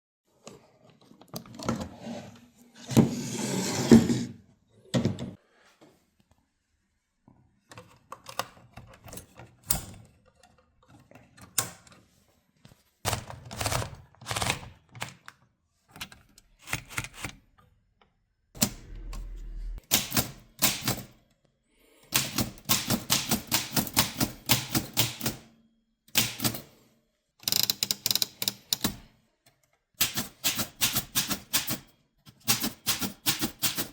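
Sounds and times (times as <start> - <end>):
typewriter keys clacking: 13.1 - 14.7.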